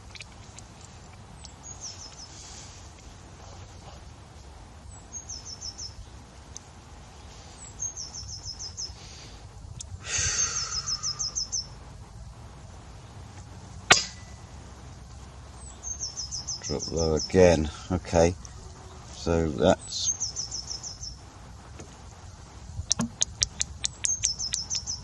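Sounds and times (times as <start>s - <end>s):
songbird singing: 0.0s - 25.0s
air rifle shot: 13.9s - 14.3s.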